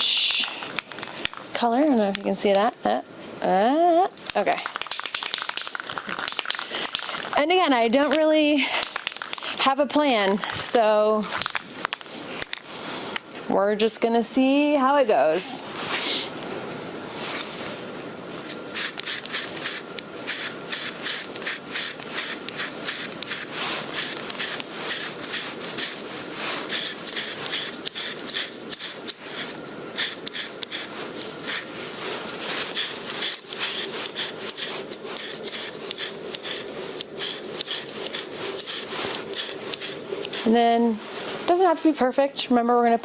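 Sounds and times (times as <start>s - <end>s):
aerosol can spraying bursts: 18.6s - 31.8s, 32.6s - 40.6s.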